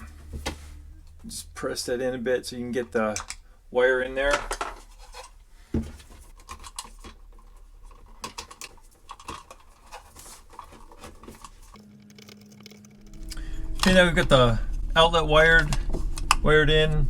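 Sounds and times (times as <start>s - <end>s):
clicks and scratches of wiring: 4.2s - 5.4s, 6.0s - 16.5s.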